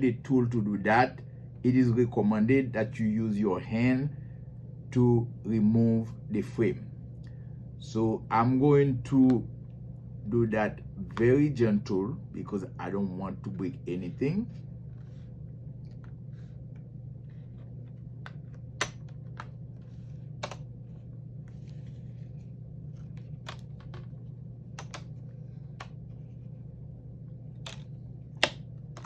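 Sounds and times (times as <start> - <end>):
steady low hum: 0.0 - 29.0.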